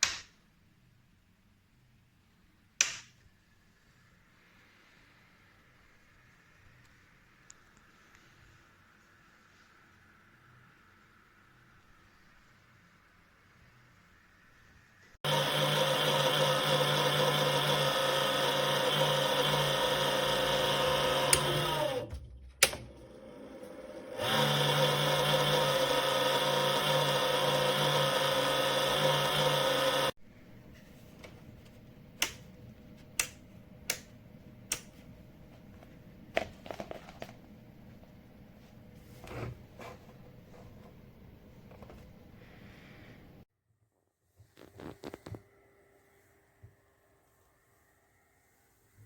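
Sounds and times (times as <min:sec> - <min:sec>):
small electric motor humming: 0:15.3 - 0:22.0, 0:24.2 - 0:30.1.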